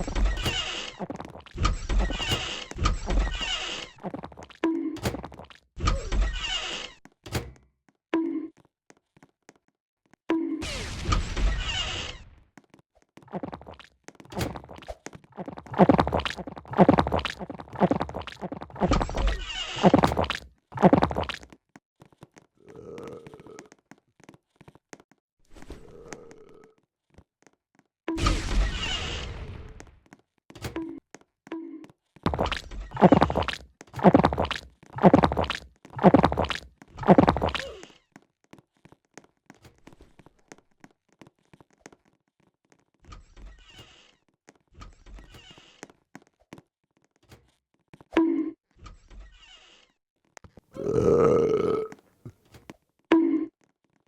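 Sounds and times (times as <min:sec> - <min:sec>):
low-pitched gulps or burps: 0:14.6 - 0:21.4, 0:32.3 - 0:37.8, 0:50.7 - 0:52.4.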